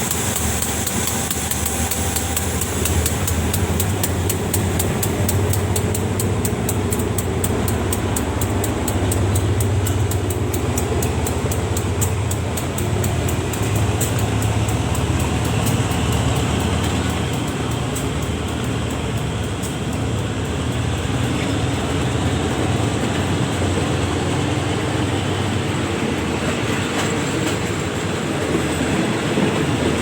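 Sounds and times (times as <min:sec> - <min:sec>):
diesel engine rumble: 0:00.0 - 0:29.5
rapid even clicking: 0:00.1 - 0:22.0.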